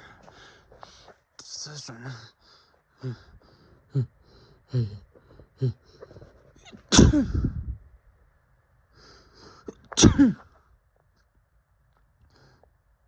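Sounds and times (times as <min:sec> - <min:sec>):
short catching breaths: 0:00.0 - 0:01.2, 0:02.4 - 0:06.4
person sneezing: 0:06.9 - 0:07.5, 0:09.7 - 0:10.4.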